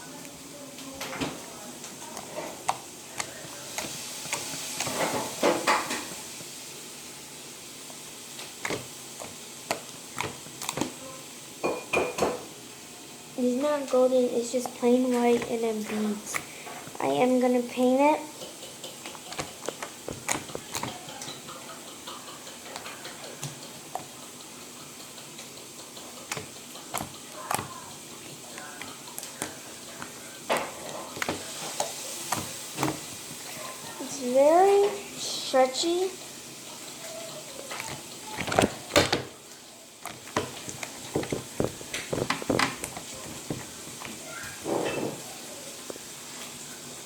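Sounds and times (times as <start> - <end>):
slime sticky pops: 8.4 - 10.9, 40.0 - 44.2
slime clicks and crackles: 8.4 - 11.0, 18.4 - 21.4, 25.4 - 33.3, 40.0 - 44.2.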